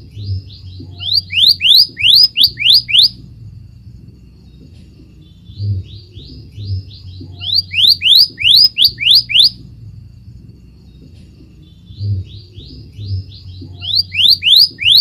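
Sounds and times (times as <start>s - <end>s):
bird upslurred whistles: 0.8s - 3.2s, 7.2s - 9.6s, 13.7s - 15.0s.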